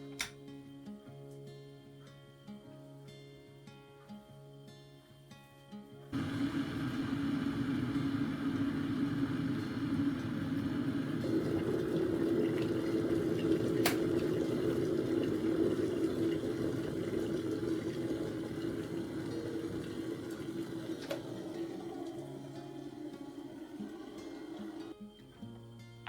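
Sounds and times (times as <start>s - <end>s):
mechanical hum: 6.1s - 25.0s.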